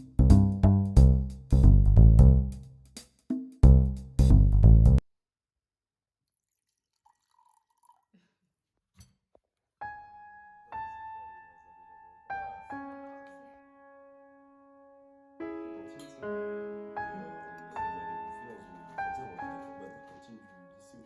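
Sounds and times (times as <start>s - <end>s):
soft slow piano notes: 9.9s - 21.0s.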